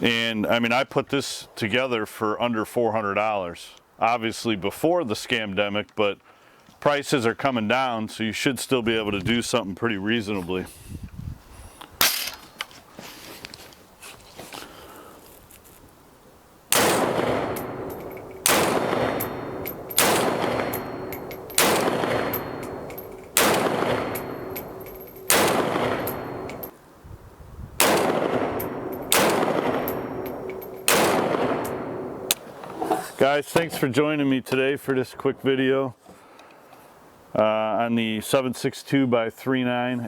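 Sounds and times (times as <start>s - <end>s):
rifle shots with long echo: 16.7s - 26.7s, 27.8s - 32.4s.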